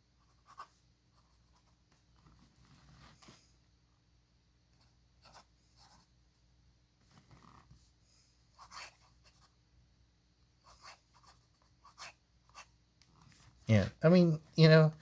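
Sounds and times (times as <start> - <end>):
fountain pen scratching on paper: 0.2 - 3.4, 5.2 - 6.1, 8.6 - 9.5, 10.6 - 12.7.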